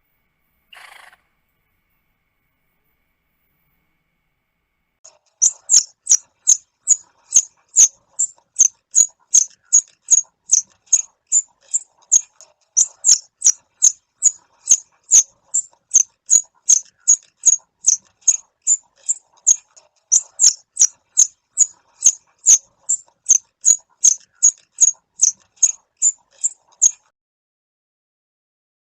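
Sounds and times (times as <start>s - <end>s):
animal chirping: 5.1s - 27.1s.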